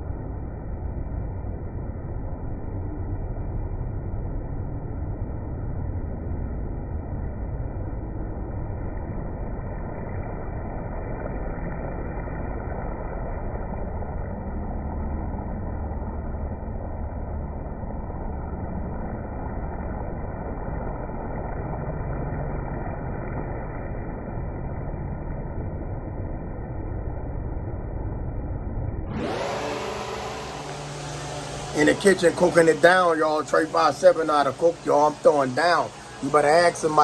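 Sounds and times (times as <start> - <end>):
low even rumble: 0.0 - 37.0.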